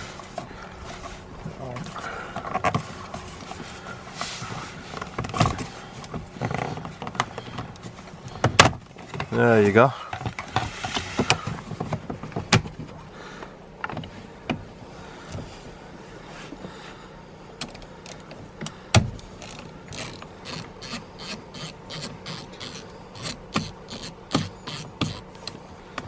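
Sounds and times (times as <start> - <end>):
ratchet clicking: 19.4 - 25.5.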